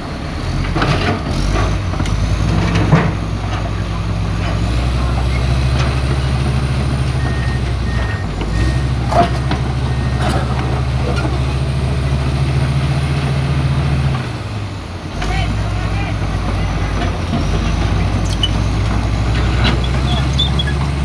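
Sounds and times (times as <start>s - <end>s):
excavator diesel engine running: 0.0s - 21.0s
faint repeated beep: 7.2s - 8.9s.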